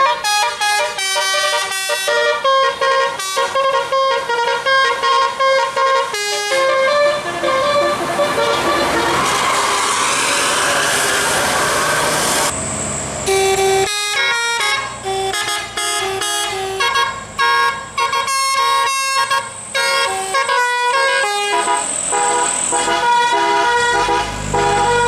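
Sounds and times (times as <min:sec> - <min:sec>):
musical air horn tune: 0:00.0 - 0:12.5, 0:13.3 - 0:25.0
rush of noise: 0:07.1 - 0:13.3.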